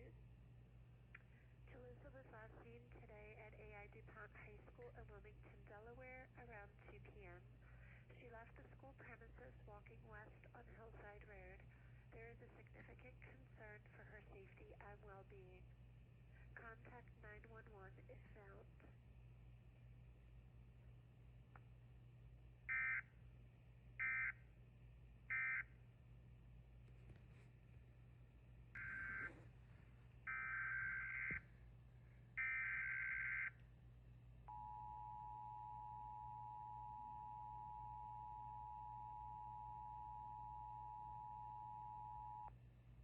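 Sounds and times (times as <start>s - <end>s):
two-tone attention signal: 34.5s - 42.5s.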